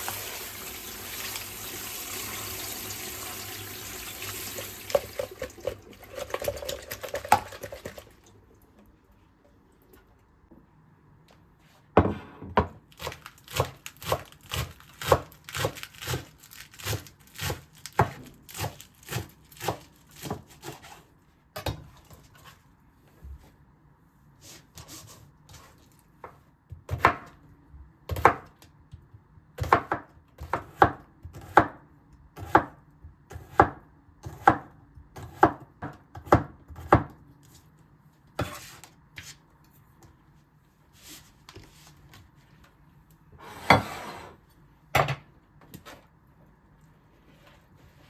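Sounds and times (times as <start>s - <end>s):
knife chopping on cutting board: 12.0s - 16.2s, 29.6s - 31.8s, 32.4s - 37.2s.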